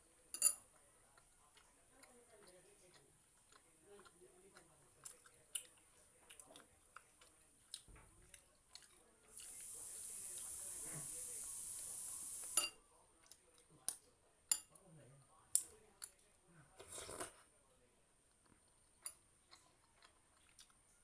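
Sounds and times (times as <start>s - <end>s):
chewing and biting food: 1.2s - 9.6s, 18.3s - 21.0s
steady high hiss: 9.4s - 12.7s.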